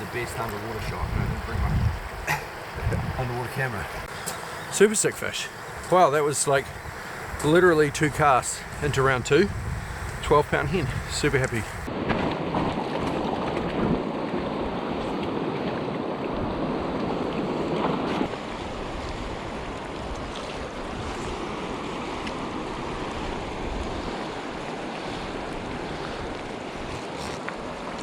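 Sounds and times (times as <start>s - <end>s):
wind buffeting microphone: 0.0s - 4.1s, 5.5s - 24.4s
river water rushing: 2.0s - 11.9s.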